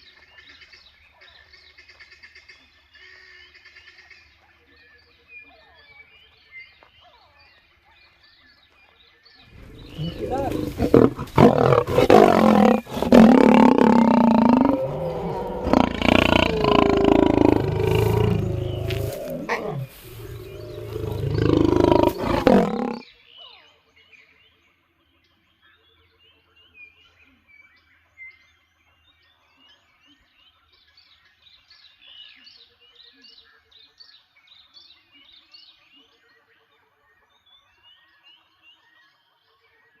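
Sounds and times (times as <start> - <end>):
lion roaring: 9.6 - 23.0.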